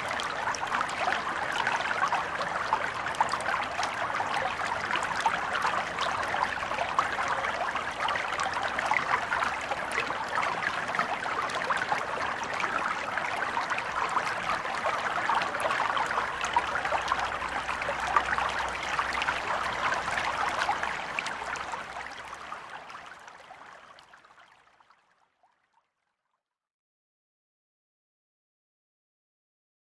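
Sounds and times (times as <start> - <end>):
stream babbling over stones: 0.0 - 23.9.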